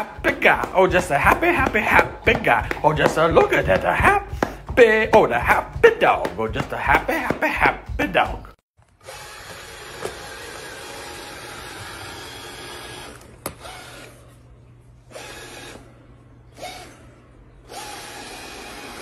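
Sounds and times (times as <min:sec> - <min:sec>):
small electric motor whirring: 0:09.0 - 0:14.3, 0:15.1 - 0:15.9, 0:16.5 - 0:19.0.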